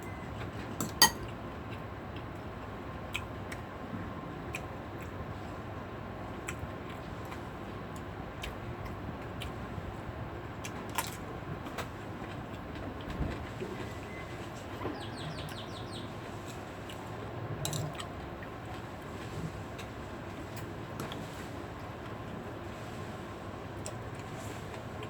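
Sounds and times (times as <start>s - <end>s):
bird chirping: 14.9s - 16.1s.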